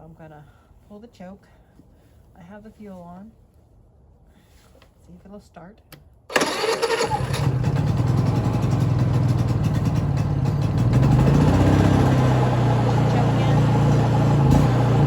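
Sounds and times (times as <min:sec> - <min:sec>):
generator engine running: 0:06.3 - 0:15.0.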